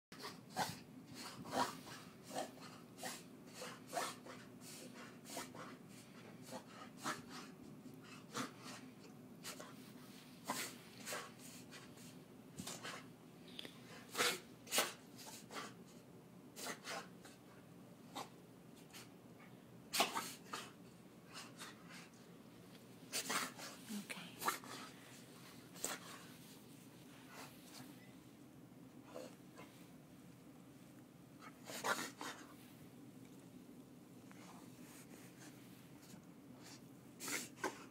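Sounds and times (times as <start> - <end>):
dog reverse sneezing: 14.0 - 15.7, 19.9 - 20.8, 37.2 - 37.9.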